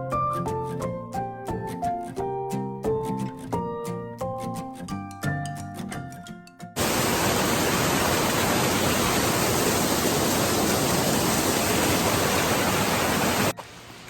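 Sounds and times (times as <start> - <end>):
music with bell-like notes: 3.7 - 6.8
waterfall rushing: 6.8 - 14.0.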